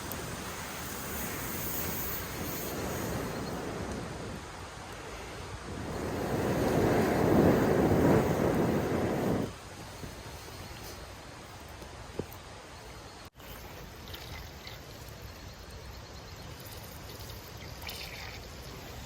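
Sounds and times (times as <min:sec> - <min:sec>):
rushing wind: 0:00.0 - 0:13.2.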